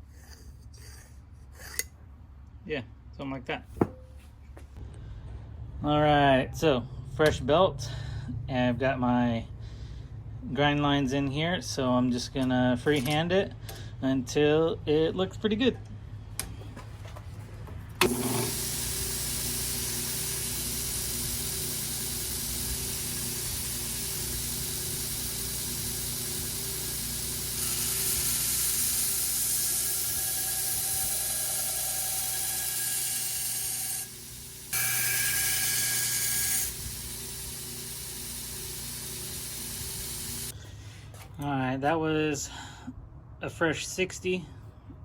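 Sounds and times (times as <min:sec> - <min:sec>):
belt grinder motor hum: 0:18.0 - 0:40.5
steel grinding on abrasive belt: 0:18.0 - 0:40.6.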